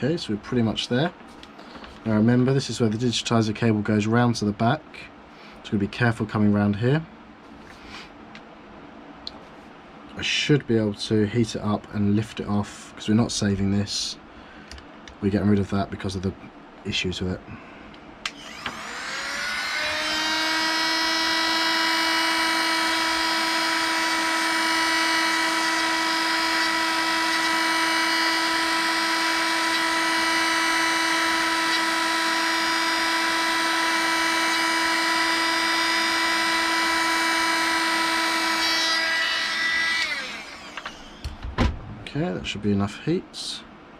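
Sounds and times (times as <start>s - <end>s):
hot-air gun whining: 18.2s - 41.7s.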